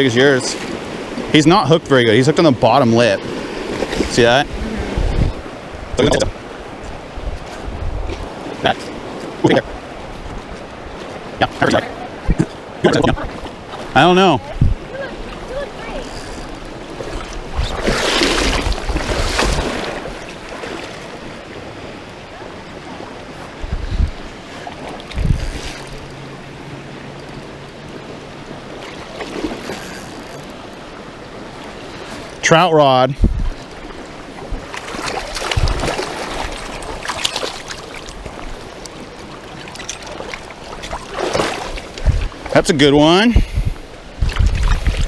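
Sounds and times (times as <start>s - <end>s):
rushing river water: 0.0s - 45.0s
wind buffeting microphone: 3.2s - 20.3s, 22.5s - 26.1s, 33.1s - 45.0s
small splashes and knocks: 16.0s - 21.0s, 34.5s - 42.5s, 44.2s - 45.0s.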